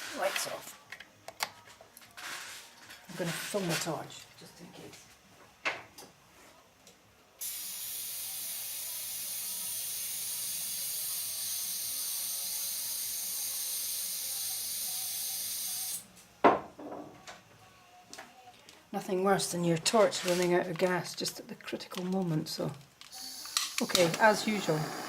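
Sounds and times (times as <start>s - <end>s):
gas hissing into torch: 7.4s - 16.0s, 23.1s - 25.0s.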